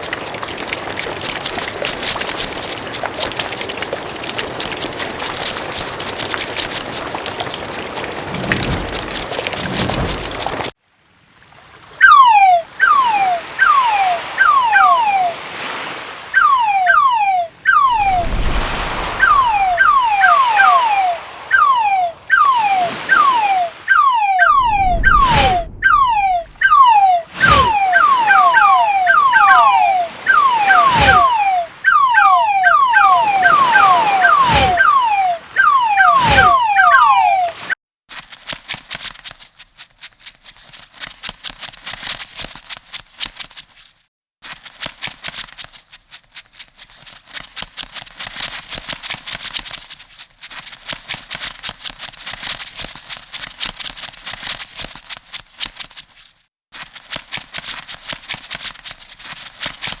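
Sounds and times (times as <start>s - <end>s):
short chirps sliding down in pitch: 12.0s - 15.6s, 16.3s - 37.7s.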